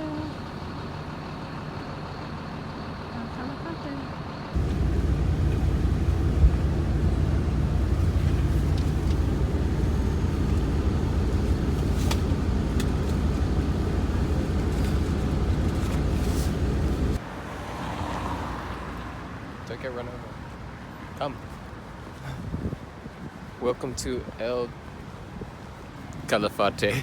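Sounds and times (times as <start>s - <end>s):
vehicle road rumble inside: 2.9s - 17.2s.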